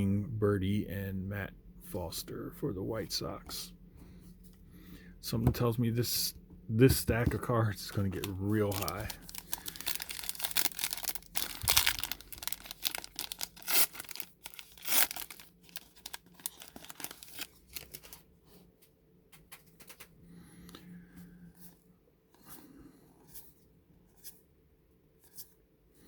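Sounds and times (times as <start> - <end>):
cards rustling: 6.9 - 18.3
foil wrapper tearing and crinkling: 7.9 - 18.2.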